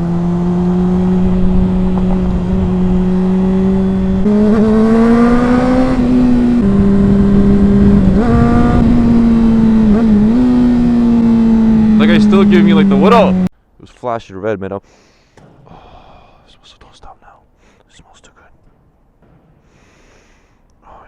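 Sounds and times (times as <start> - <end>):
motorcycle engine running: 0.0 - 13.5.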